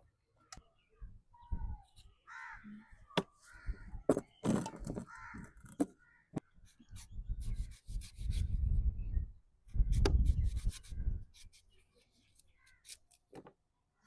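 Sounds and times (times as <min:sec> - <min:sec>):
crows cawing: 0:02.3 - 0:04.0, 0:05.0 - 0:06.4.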